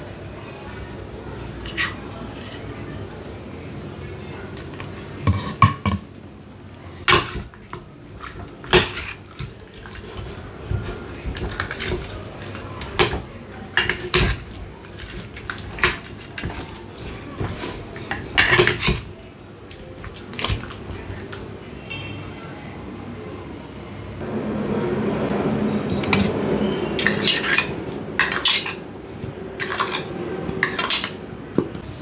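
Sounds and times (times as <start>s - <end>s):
metal utensils clinking on pots: 7.1s - 21.5s, 25.9s - 31.7s.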